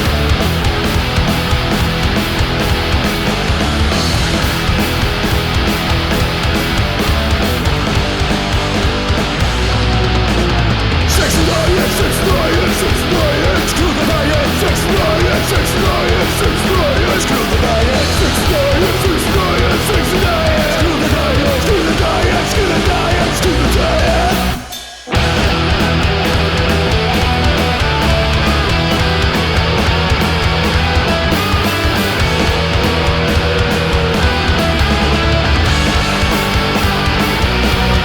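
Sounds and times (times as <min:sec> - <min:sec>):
punk rock electric guitars: 0:00.0 - 0:38.0.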